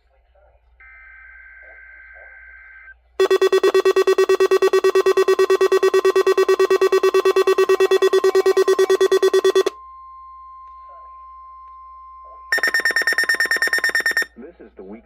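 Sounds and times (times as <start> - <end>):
buzzy pulsing alarm tone: 3.2 - 9.7, 12.6 - 14.3
digital data tones screech: 3.2 - 9.7, 12.6 - 14.3.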